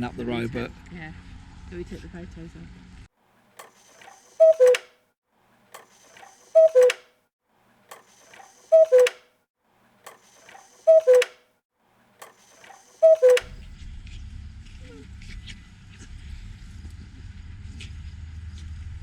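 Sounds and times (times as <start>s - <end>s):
soft mechanical clicking: 3.5s - 4.9s, 5.6s - 7.1s, 7.9s - 9.2s, 10.0s - 11.4s, 12.2s - 13.7s
cuckoo clock calling: 3.6s - 5.0s, 5.8s - 7.1s, 7.9s - 9.3s, 10.1s - 11.4s, 12.2s - 13.7s.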